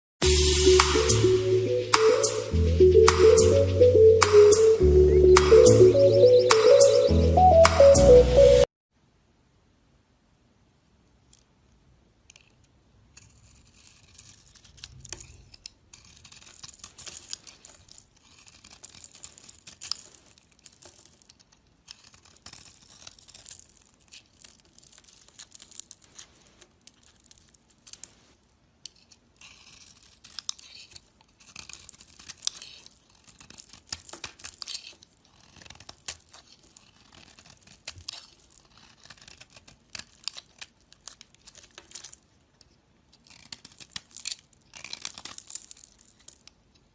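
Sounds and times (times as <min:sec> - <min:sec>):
bar soap crackling as cut: 0:13.2 - 0:28.0, 0:28.9 - 0:42.3, 0:43.1 - 0:46.6.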